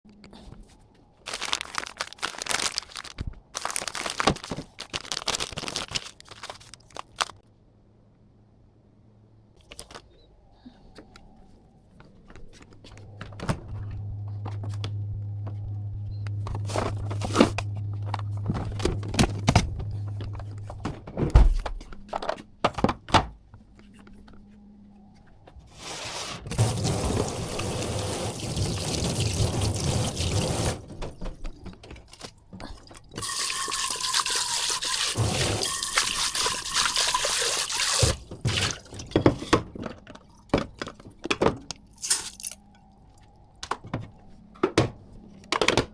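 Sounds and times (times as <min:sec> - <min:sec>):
tap water running into sink: 0:26.5 - 0:30.8, 0:33.2 - 0:38.8.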